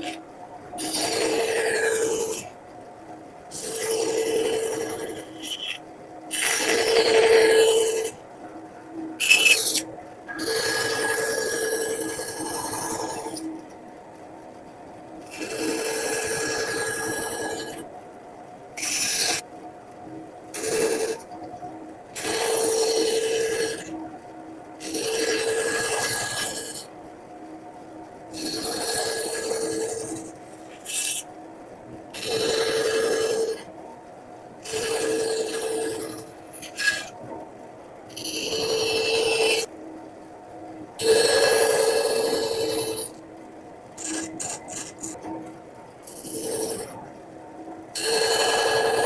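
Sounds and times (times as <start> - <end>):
carving tool scraping wood: 0.8 - 2.5, 3.5 - 8.1, 9.2 - 9.8, 10.4 - 13.4, 28.4 - 31.2, 34.7 - 37.1, 44.0 - 45.1.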